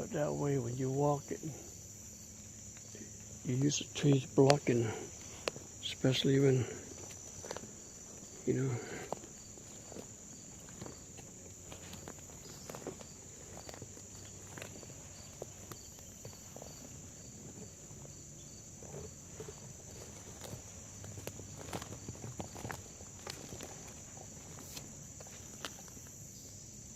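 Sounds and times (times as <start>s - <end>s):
high insect chorus: 0.0s - 26.9s
insect pulsing: 0.0s - 26.9s
footsteps in dry leaves: 9.1s - 18.0s, 19.2s - 25.7s.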